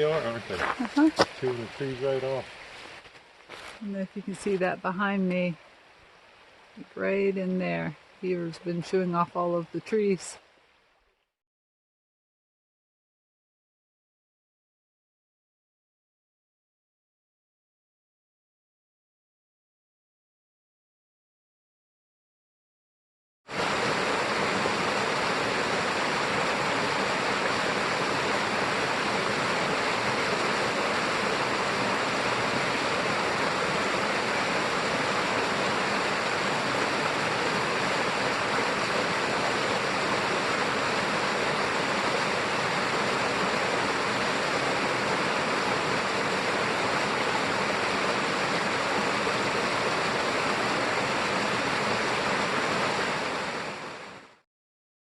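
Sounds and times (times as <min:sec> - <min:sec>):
water rushing over rocks: 0:00.0 - 0:09.6, 0:23.5 - 0:54.4.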